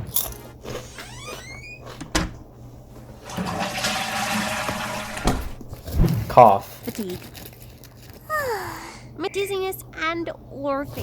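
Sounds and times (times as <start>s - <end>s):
toilet flushing: 3.1s - 5.6s.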